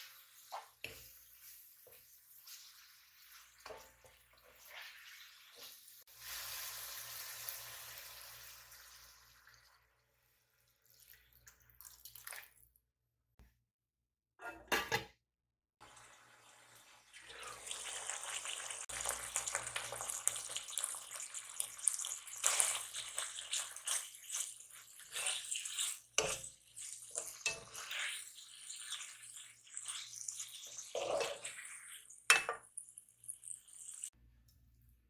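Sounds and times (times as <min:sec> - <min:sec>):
dishes and utensils clinking: 0:14.4 - 0:15.1, 0:32.3 - 0:32.7.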